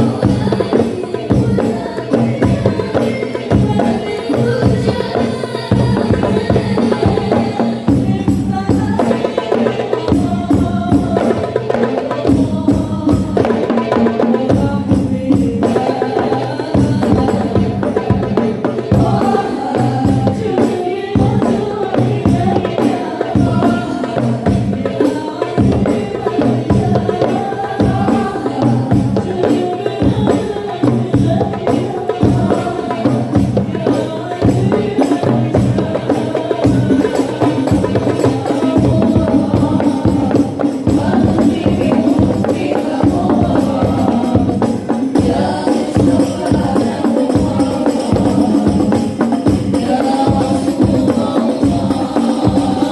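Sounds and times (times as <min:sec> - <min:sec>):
hand drum and tambourine percussion: 0:00.0 - 0:52.9
voices singing: 0:00.0 - 0:52.9.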